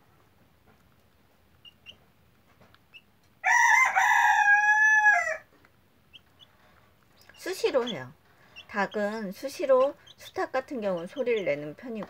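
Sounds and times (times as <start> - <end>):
chicken crowing: 3.4 - 5.5.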